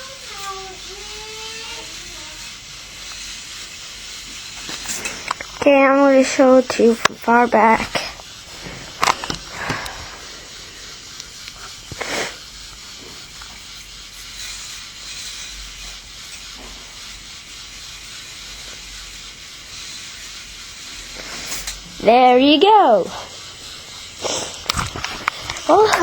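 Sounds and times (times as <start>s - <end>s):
toy roller coaster hissing: 0.0s - 26.0s.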